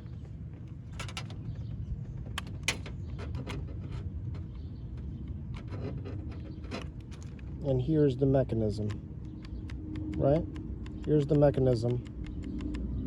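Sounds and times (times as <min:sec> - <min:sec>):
door latch clicking and knocking: 0:02.4 - 0:07.4.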